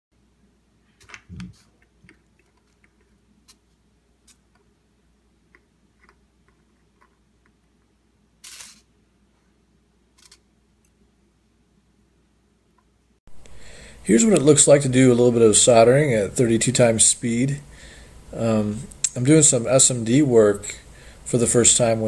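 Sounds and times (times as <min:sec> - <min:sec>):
short hissing burst: 0:08.4 - 0:08.9, 0:13.3 - 0:14.2.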